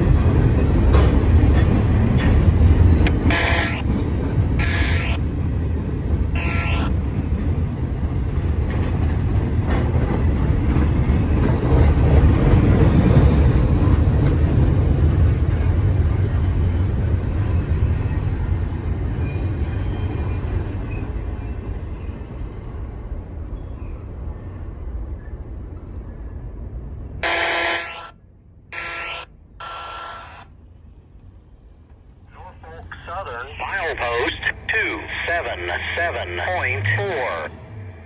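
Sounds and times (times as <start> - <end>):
freight train cars rumbling: 0.0 - 38.0
short electronic tone: 6.4 - 6.9.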